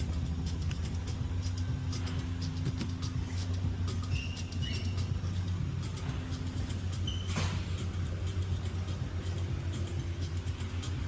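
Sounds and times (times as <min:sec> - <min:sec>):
steady low rumble: 0:00.0 - 0:11.0
short high squeaks: 0:04.0 - 0:05.4, 0:06.8 - 0:07.8.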